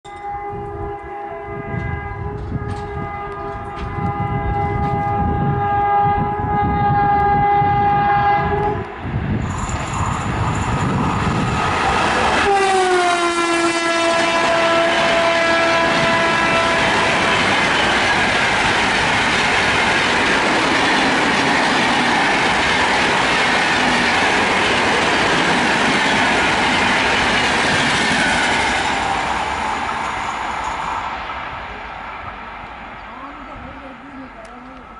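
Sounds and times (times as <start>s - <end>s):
locomotive horn blast: 0.1s - 9.0s, 12.2s - 18.1s
train coaches rolling past: 0.1s - 34.9s.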